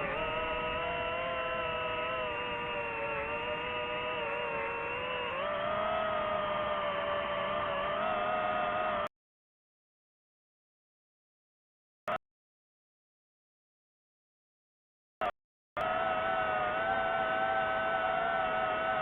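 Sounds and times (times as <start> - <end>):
drone propellers whining: 0.0 - 9.1, 15.8 - 19.0.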